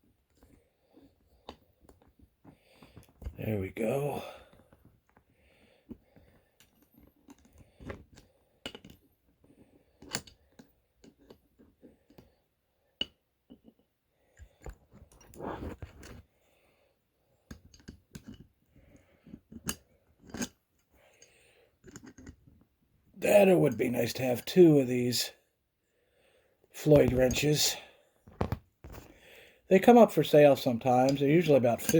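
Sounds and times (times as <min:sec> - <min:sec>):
rustling scrape: 0:15.3 - 0:16.2.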